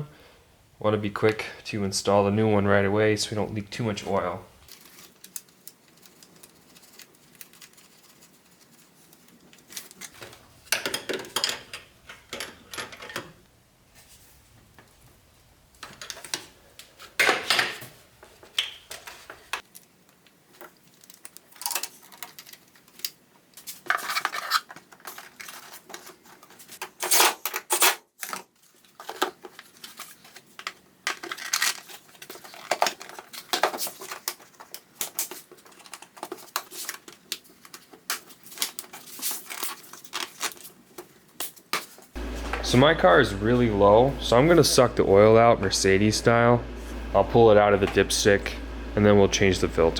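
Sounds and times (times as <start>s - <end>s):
metal tools clinking and scraping: 10.0s - 13.4s.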